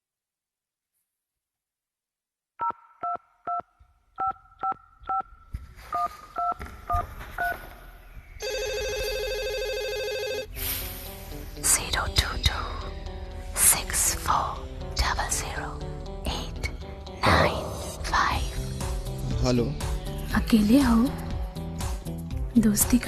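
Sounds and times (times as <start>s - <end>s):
buzzing telephone ring tone: 8.4s - 10.5s.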